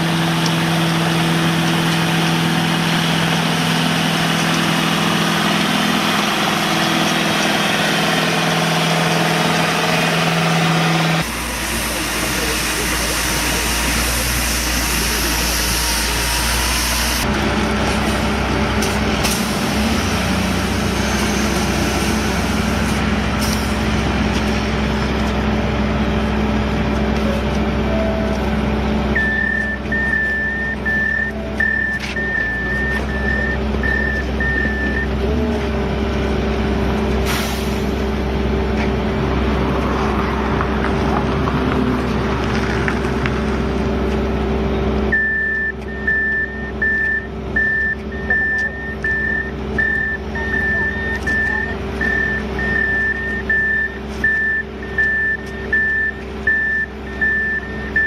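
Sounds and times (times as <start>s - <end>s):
construction machinery engine hum: 0.0s - 58.0s
reversing alarm beeping: 27.8s - 28.5s, 29.1s - 35.3s, 45.1s - 58.0s.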